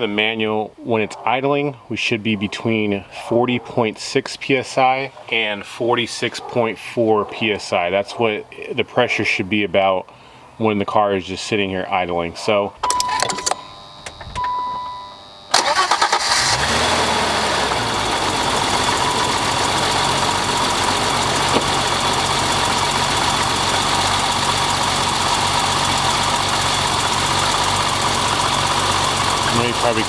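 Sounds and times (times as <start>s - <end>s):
car engine starting and idling: 15.5s - 30.0s.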